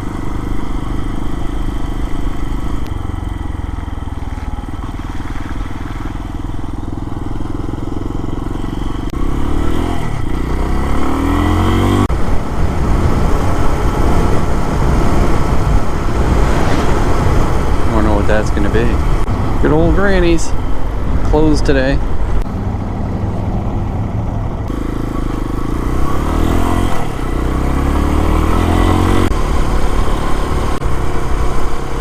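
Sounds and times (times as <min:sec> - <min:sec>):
motorcycle engine running: 0:00.0 - 0:32.0.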